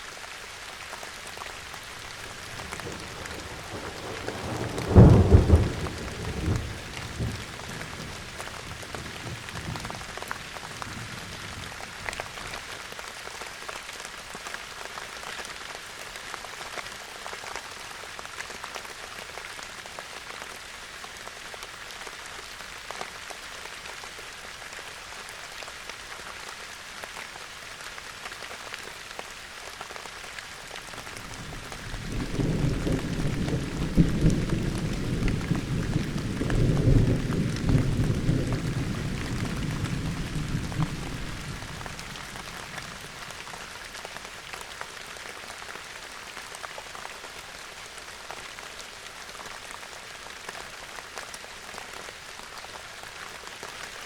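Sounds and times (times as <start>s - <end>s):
steady rain falling: 0.0s - 54.0s
rain drop ticks: 2.2s - 10.8s
thunder rumbling: 2.3s - 10.0s, 31.1s - 43.2s.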